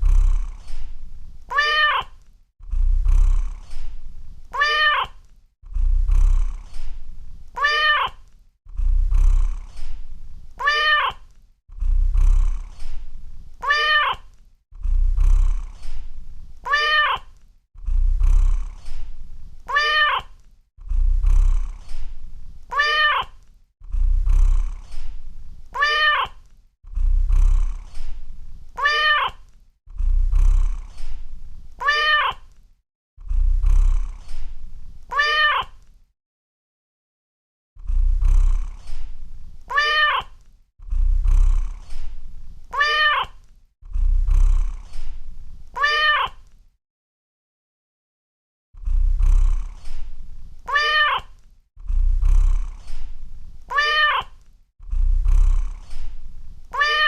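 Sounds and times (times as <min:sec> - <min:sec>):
cat purring: 0:00.0 - 0:32.6, 0:33.2 - 0:35.9, 0:37.8 - 0:45.8, 0:48.8 - 0:57.0
cat meowing: 0:01.5 - 0:02.2, 0:04.5 - 0:05.2, 0:07.6 - 0:08.3, 0:10.6 - 0:11.3, 0:13.6 - 0:14.3, 0:16.6 - 0:17.3, 0:19.7 - 0:20.4, 0:22.7 - 0:23.4, 0:25.7 - 0:26.4, 0:28.8 - 0:29.4, 0:31.8 - 0:32.5, 0:35.1 - 0:35.8, 0:39.7 - 0:40.4, 0:42.7 - 0:43.4, 0:45.8 - 0:46.5, 0:50.7 - 0:51.4, 0:53.7 - 0:54.4, 0:56.7 - 0:57.0.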